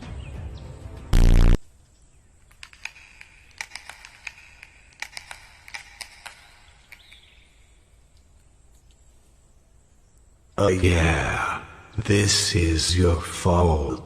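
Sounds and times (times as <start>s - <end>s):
faint high whine: 1.2s - 1.7s.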